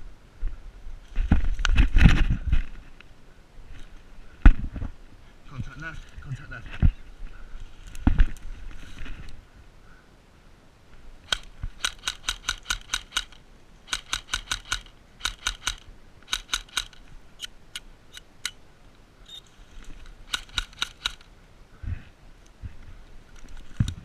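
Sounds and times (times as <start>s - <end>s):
airsoft rifle shots: 11.3s - 17.0s, 20.3s - 21.3s.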